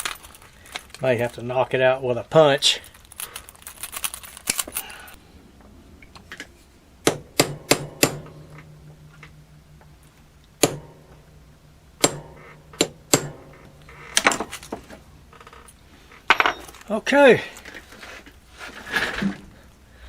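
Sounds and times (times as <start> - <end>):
hammer striking a metal punch: 7.0 - 14.9.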